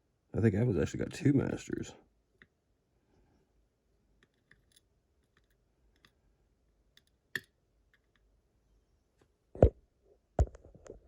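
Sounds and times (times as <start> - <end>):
small clicks of lock pins: 7.0 - 8.3.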